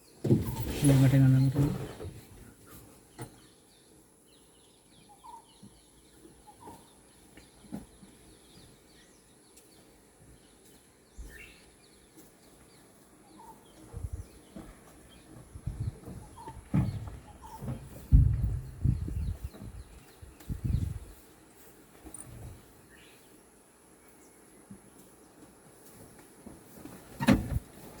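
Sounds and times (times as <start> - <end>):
bird chirps: 3.2 - 21.0
low thumps: 15.4 - 21.0.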